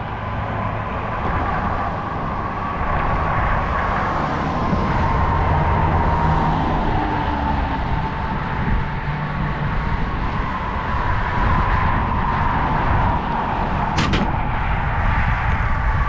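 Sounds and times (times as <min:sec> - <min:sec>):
roadside traffic noise: 0:00.0 - 0:16.0
sharp crack: 0:13.9 - 0:14.7.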